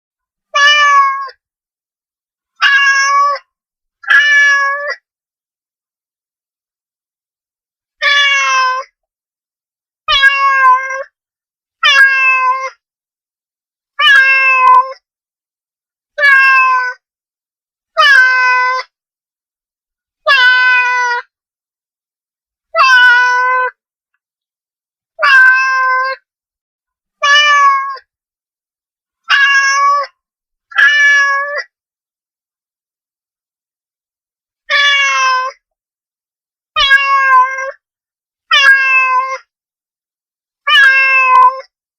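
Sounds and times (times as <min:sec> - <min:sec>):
cat meowing: 0:00.6 - 0:01.4, 0:02.6 - 0:03.4, 0:04.0 - 0:05.0, 0:08.0 - 0:08.9, 0:10.1 - 0:11.1, 0:11.8 - 0:12.8, 0:14.0 - 0:15.0, 0:16.2 - 0:17.0, 0:18.0 - 0:18.9, 0:20.3 - 0:21.3, 0:22.8 - 0:23.8, 0:25.2 - 0:26.2, 0:27.2 - 0:28.0, 0:29.3 - 0:30.1, 0:30.7 - 0:31.7, 0:34.7 - 0:35.6, 0:36.8 - 0:37.8, 0:38.5 - 0:39.5, 0:40.7 - 0:41.7.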